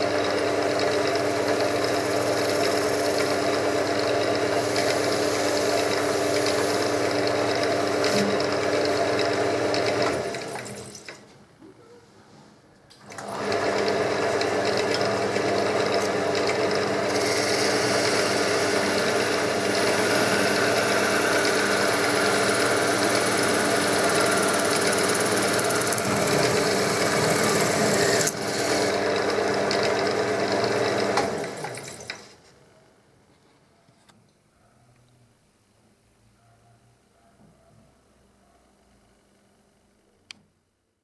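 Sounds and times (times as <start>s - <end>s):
wood lathe motor running: 0.0s - 11.0s, 13.1s - 32.2s.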